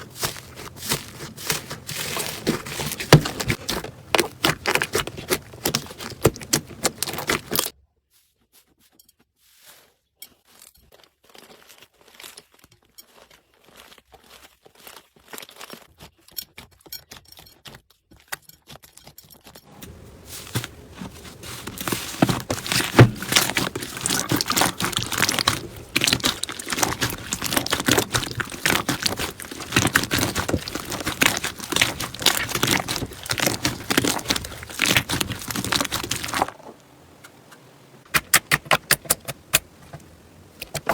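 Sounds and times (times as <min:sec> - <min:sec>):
slime squeezed crackling and popping: 0:00.3 - 0:07.7, 0:21.6 - 0:36.6.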